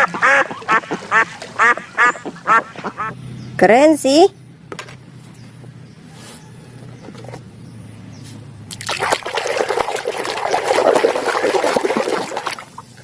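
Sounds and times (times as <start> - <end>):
water running and splashing: 8.7 - 13.0.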